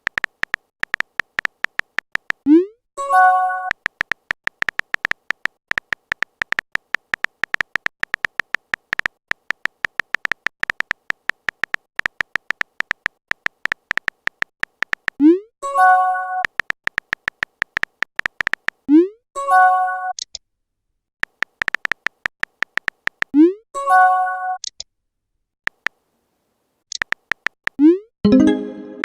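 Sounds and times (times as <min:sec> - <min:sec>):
phone keyboard tapping clicks: 0:00.0 - 0:02.4, 0:03.7 - 0:15.2, 0:16.4 - 0:18.9, 0:21.2 - 0:23.4, 0:25.7 - 0:26.0, 0:26.9 - 0:27.8.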